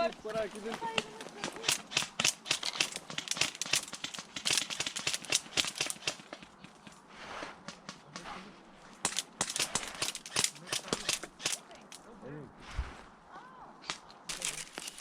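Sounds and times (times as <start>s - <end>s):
pellets striking: 0.7s - 6.9s.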